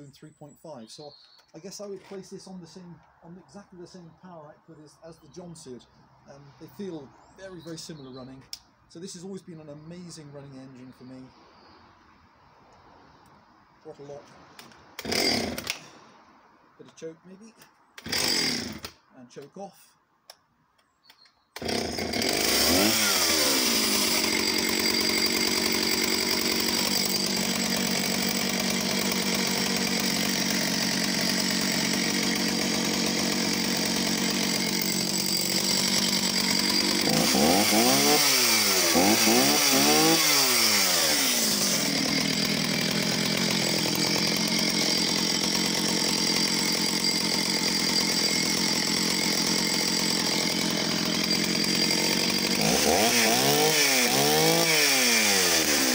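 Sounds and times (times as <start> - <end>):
chainsaw running: 14.6 - 16.0, 18.0 - 19.0, 21.6 - 55.9.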